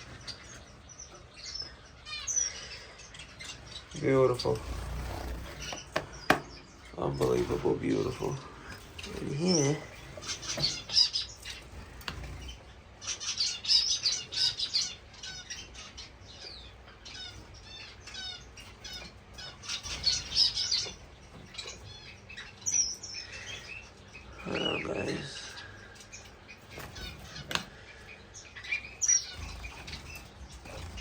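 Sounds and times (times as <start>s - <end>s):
finches chirping: 0.0s - 31.0s
wings fluttering: 3.9s - 12.8s, 26.6s - 27.8s, 29.0s - 31.0s.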